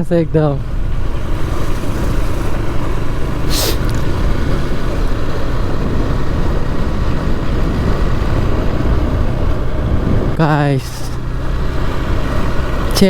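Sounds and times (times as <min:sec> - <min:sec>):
motorcycle engine: 0:00.0 - 0:13.0
wind buffeting microphone: 0:00.6 - 0:13.0
short hiss: 0:03.5 - 0:04.0.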